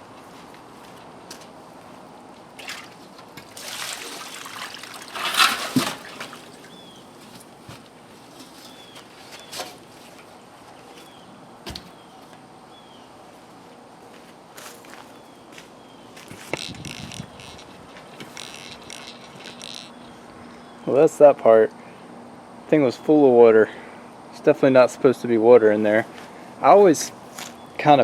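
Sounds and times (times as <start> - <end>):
water splashing and trickling: 2.6 - 6.8.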